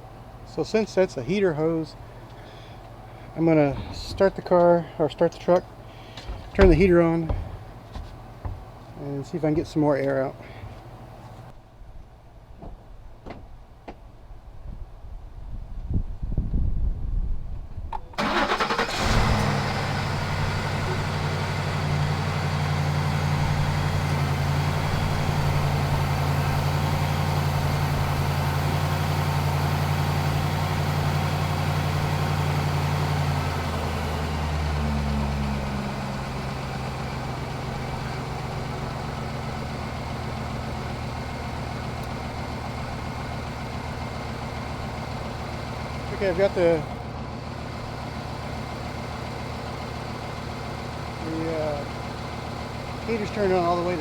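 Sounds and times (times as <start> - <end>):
car engine idling: 0.0 - 11.5, 18.2 - 54.0
car engine cranking and starting: 2.3 - 11.5, 18.0 - 54.0.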